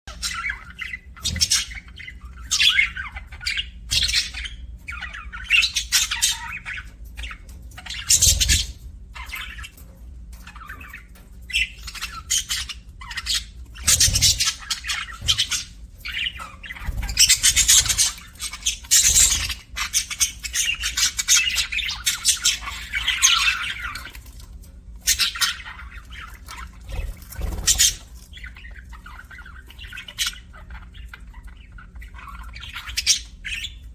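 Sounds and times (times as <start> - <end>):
budgerigars chirping and chattering: 0.1 - 33.9.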